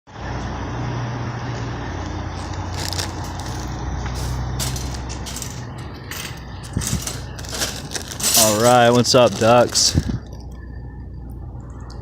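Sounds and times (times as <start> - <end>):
vehicle engine idling: 1.2 - 12.0.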